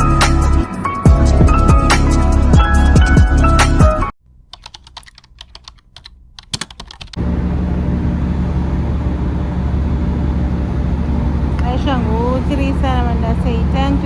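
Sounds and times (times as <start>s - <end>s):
background music: 0.0s - 4.1s
vehicle noise with low hum: 4.3s - 14.0s
computer keyboard clicks: 4.5s - 7.2s.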